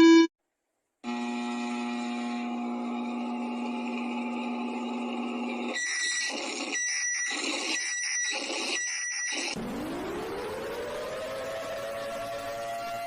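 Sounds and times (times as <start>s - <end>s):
harsh beeping bursts: 5.7s - 9.6s
low electronic drone: 9.6s - 13.0s.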